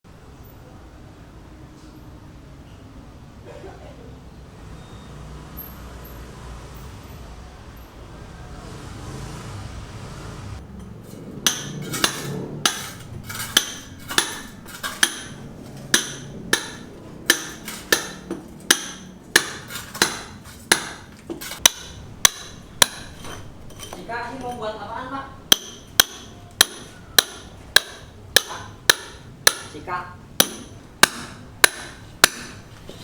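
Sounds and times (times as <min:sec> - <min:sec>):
hammer striking and ringing: 0:11.4 - 0:23.4, 0:25.5 - 0:29.8, 0:30.4 - 0:32.7.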